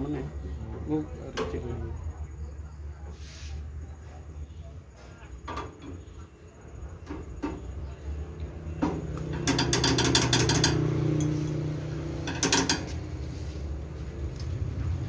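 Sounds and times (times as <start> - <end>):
rapid rattling clatter: 9.3 - 11.6, 12.2 - 13.0.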